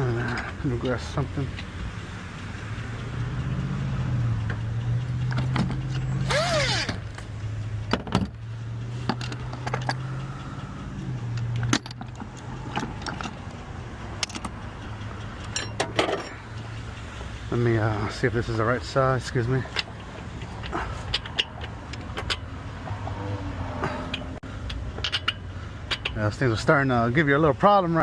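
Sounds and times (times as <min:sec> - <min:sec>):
engine running hum: 0:00.0 - 0:26.3
metal tools clinking: 0:09.0 - 0:10.2, 0:11.3 - 0:13.6, 0:15.4 - 0:16.7, 0:24.1 - 0:26.2.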